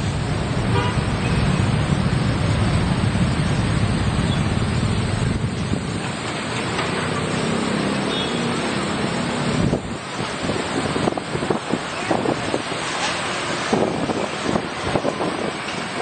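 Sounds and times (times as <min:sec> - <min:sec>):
heavy vehicle passing: 0:00.0 - 0:16.0
wind buffeting microphone: 0:01.8 - 0:06.3, 0:09.4 - 0:16.0.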